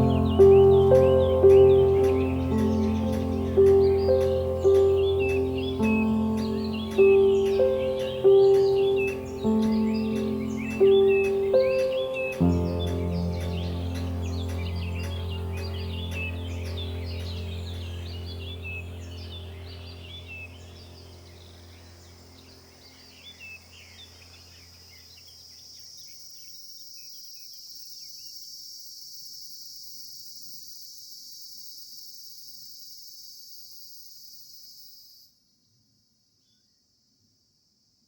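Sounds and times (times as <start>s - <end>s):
background music: 0.0s - 22.1s
birds chirping: 0.0s - 26.6s
insects trilling: 0.0s - 35.3s.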